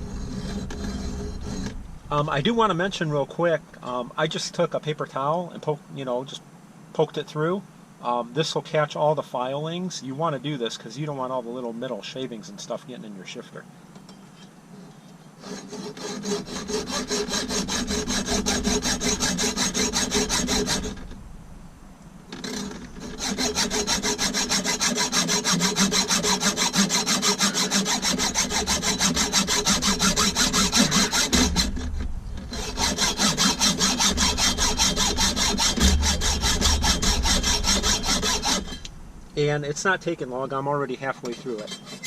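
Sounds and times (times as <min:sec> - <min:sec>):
hand saw cutting metal: 0:00.0 - 0:02.8, 0:15.4 - 0:21.2, 0:22.3 - 0:39.0, 0:41.0 - 0:42.0.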